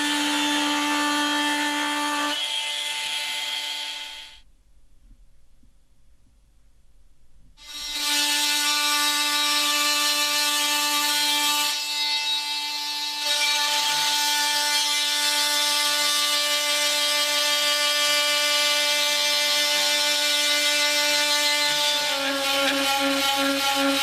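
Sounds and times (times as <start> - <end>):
oscillating multi-tool buzzing: 7.6 - 24.0.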